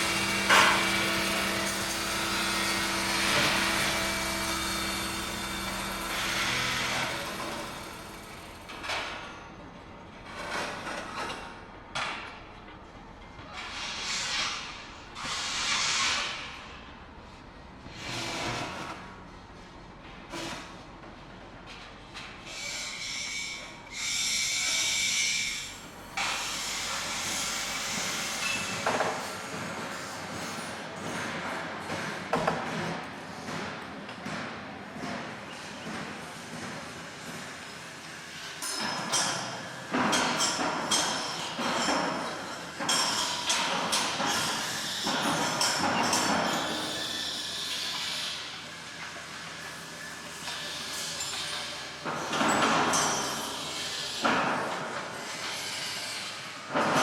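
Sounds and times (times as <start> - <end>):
construction site rumble: 0.0 - 55.6
machinery hissing with high whine: 22.5 - 28.8.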